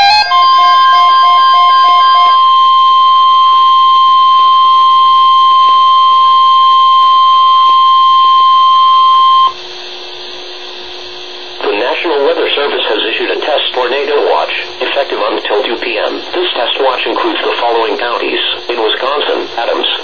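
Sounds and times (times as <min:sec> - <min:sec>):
programme music: 0:00.0 - 0:02.7
steady high alert tone: 0:00.0 - 0:09.5.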